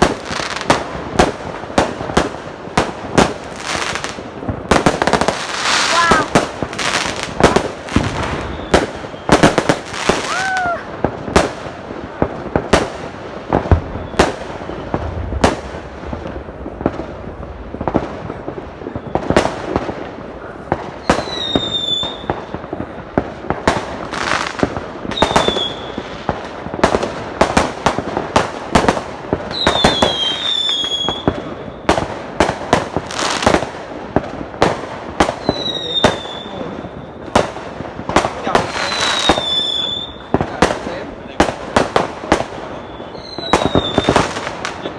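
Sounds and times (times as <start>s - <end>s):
firecrackers banging: 0.0s - 44.9s
firework whistles: 8.0s - 11.0s, 13.7s - 15.6s, 20.9s - 22.6s, 25.1s - 26.3s, 29.5s - 32.1s, 35.3s - 37.3s, 38.6s - 40.3s, 42.5s - 44.9s.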